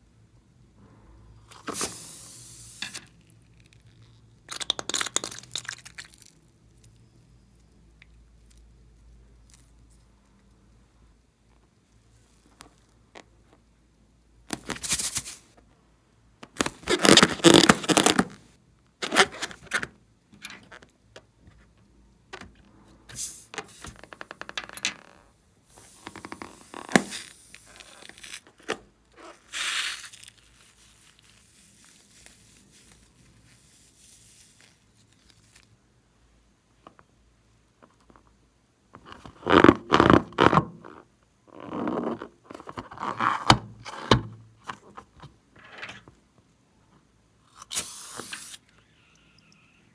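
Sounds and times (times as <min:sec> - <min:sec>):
slime scraping: 0:16.6 - 0:18.4.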